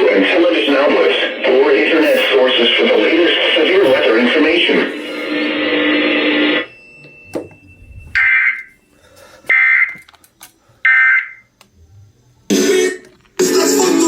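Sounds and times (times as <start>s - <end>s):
broadcast audio: 0.0s - 8.8s.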